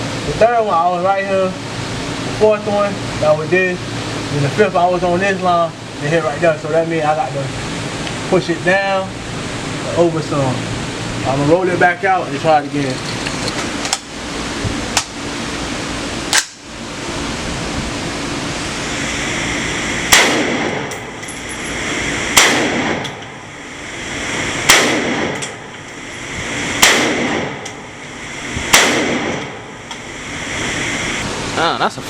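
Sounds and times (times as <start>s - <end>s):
steady hiss: 0.0s - 32.0s
gunshots: 20.1s - 20.9s, 22.4s - 23.0s, 24.6s - 25.4s, 26.8s - 27.6s, 28.7s - 29.5s.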